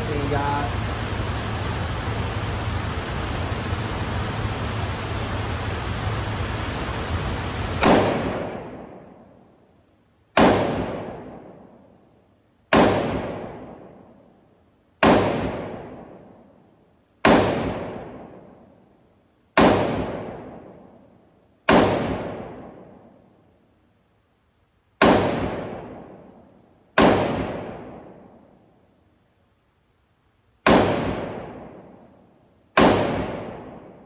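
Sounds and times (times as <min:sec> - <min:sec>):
rifle gunshots echoing: 0:07.8 - 0:09.2, 0:10.4 - 0:11.6, 0:12.7 - 0:14.0, 0:15.0 - 0:16.2, 0:17.2 - 0:18.4, 0:19.6 - 0:20.7, 0:21.7 - 0:23.0, 0:25.0 - 0:26.4, 0:27.0 - 0:28.4, 0:30.6 - 0:32.0, 0:32.8 - 0:34.0.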